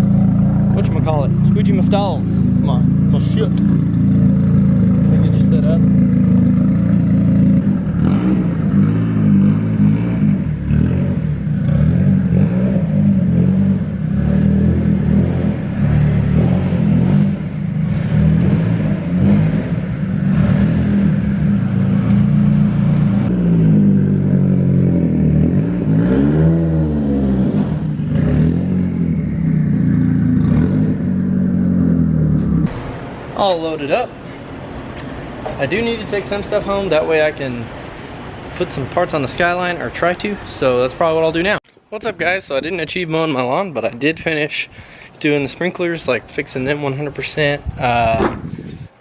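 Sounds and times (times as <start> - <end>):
car engine running and revving: 0.0 - 33.2.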